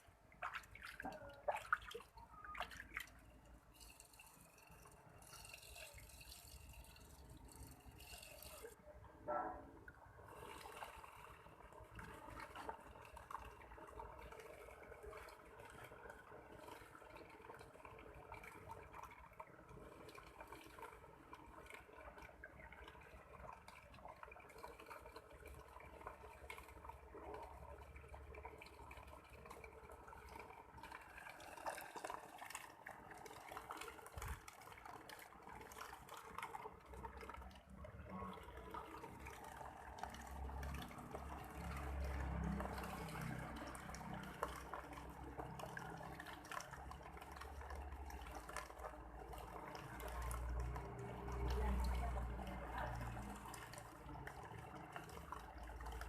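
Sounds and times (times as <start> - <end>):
water pouring and splashing: 0.0 - 8.8, 9.6 - 56.0
small pump motor: 3.7 - 8.8.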